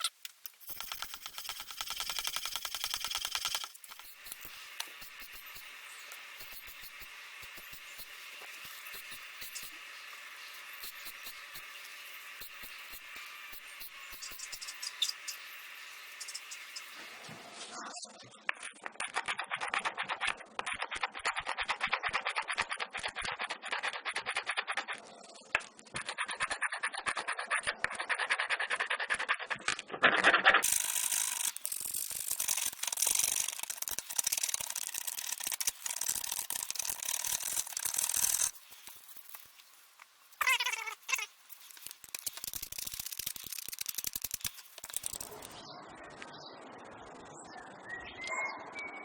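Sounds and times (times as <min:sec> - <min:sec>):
blade rasping on sandpaper: 0:30.6 - 0:39.4.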